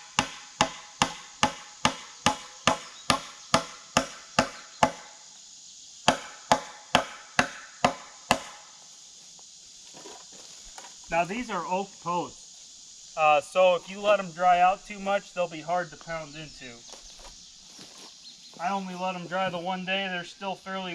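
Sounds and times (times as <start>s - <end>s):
hammer striking nails: 0.1s - 5.1s, 6.1s - 8.6s.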